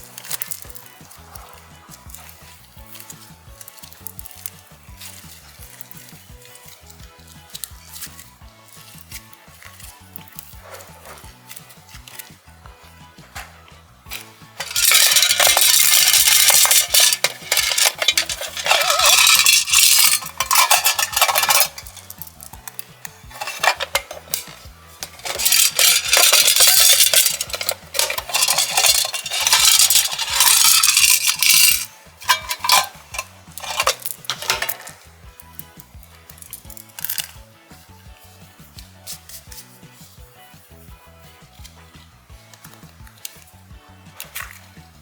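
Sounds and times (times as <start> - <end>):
slime being stirred: 0.0 - 12.4.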